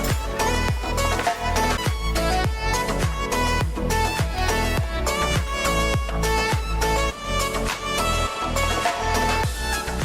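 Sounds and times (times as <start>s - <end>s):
kick drum beat: 0.0s - 7.2s, 9.4s - 9.8s
background music: 0.0s - 10.0s.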